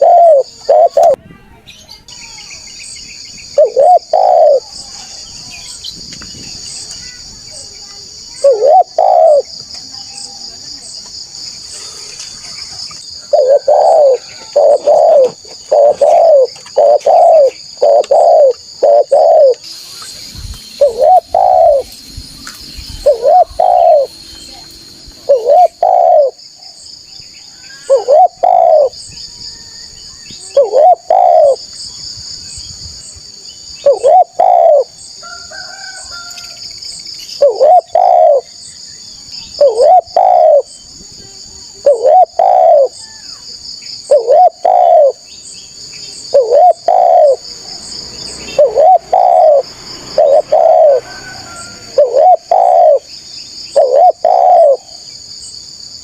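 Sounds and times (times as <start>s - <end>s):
dove cooing: 0.0s - 1.2s, 3.6s - 4.9s, 8.4s - 9.6s, 13.1s - 19.6s, 20.8s - 21.9s, 23.0s - 24.1s, 25.2s - 26.4s, 27.8s - 29.0s, 30.4s - 31.6s, 33.8s - 35.0s, 37.4s - 38.5s, 39.6s - 40.7s, 41.8s - 43.0s, 44.0s - 45.2s, 46.3s - 47.5s, 48.5s - 53.1s, 53.7s - 55.0s
high-pitched insect buzz: 13.4s - 26.5s.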